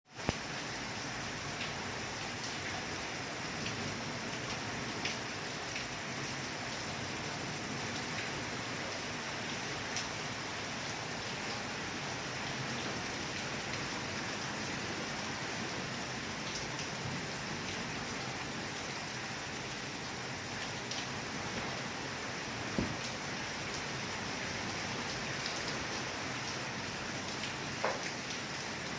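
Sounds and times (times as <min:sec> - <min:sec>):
steady rain: 0:00.1 - 0:28.9
raindrop hits: 0:22.7 - 0:23.2.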